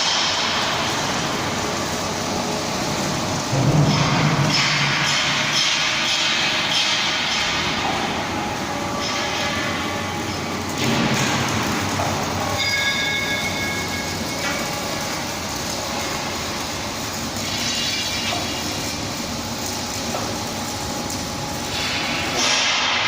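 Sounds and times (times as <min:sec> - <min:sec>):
steel straightening machine running: 0:00.0 - 0:23.0.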